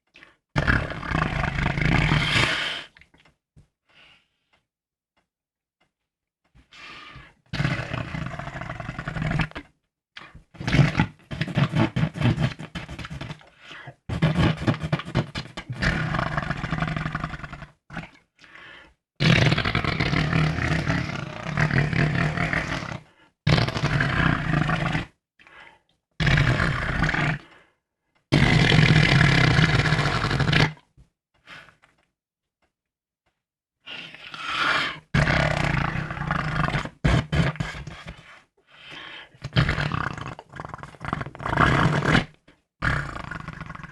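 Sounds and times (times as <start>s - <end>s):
person making fake fart noises: 0.6s - 3.0s, 7.5s - 18.2s, 19.2s - 25.2s, 26.2s - 27.5s, 28.3s - 30.9s, 34.3s - 38.3s, 39.4s - 43.9s.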